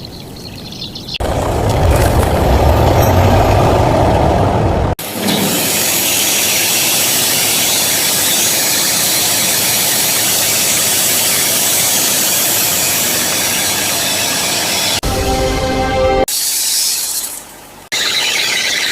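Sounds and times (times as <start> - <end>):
loud mechanical hiss: 5.0 - 15.0.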